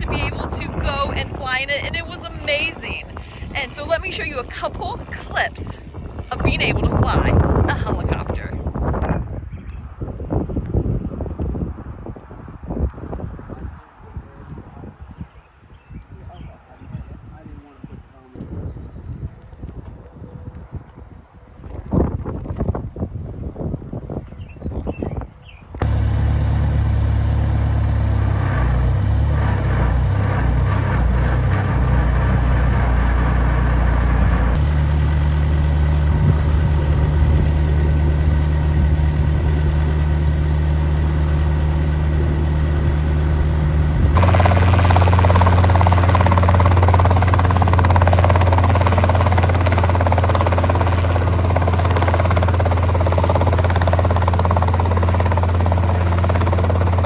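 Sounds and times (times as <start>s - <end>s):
helicopter engine and rotor drone: 0.0s - 9.2s, 25.8s - 57.0s.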